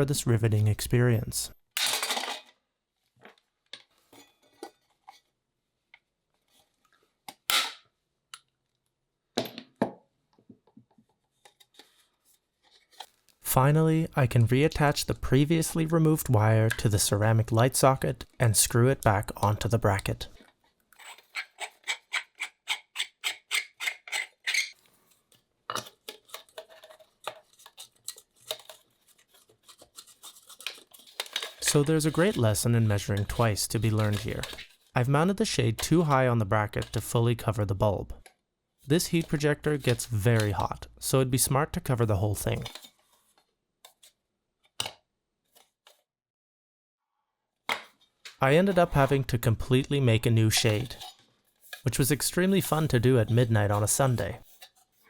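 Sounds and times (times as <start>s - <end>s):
screwdriver rasping: 21.0s - 24.8s.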